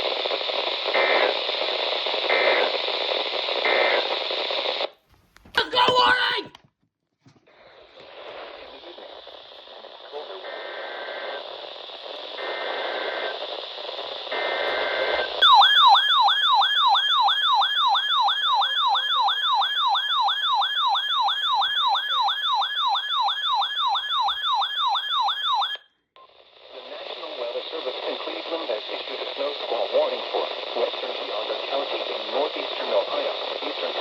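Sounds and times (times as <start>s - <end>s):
radio hiss: 0.0s - 5.0s, 7.4s - 15.5s, 26.2s - 34.0s
warbling alert siren: 14.8s - 25.9s.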